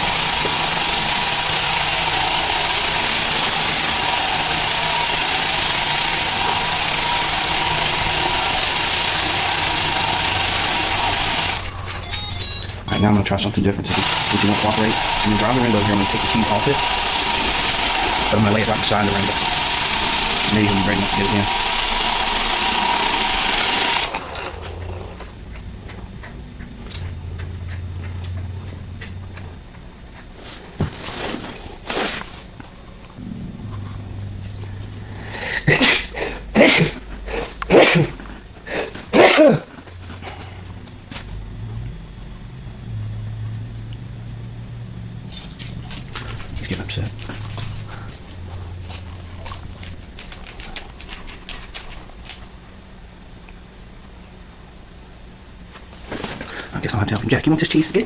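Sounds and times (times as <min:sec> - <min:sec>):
robot vacuum whirring: 0:00.0 - 0:12.5, 0:13.9 - 0:25.3
low hum: 0:32.5 - 0:38.6.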